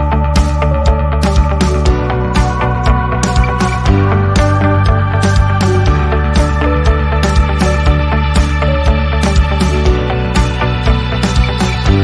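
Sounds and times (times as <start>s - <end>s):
bass and synth notes: 0.0s - 12.0s.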